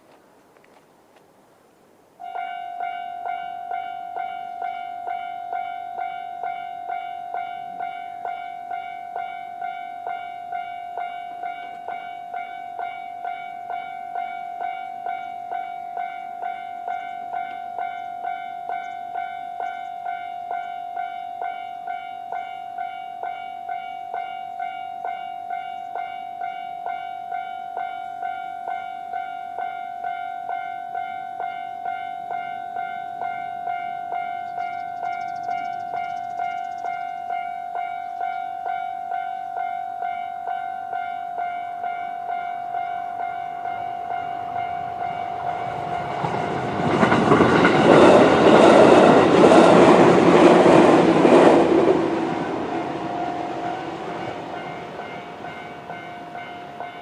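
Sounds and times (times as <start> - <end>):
level crossing alarm bell: 2.2 - 49.8, 52.1 - 57.0.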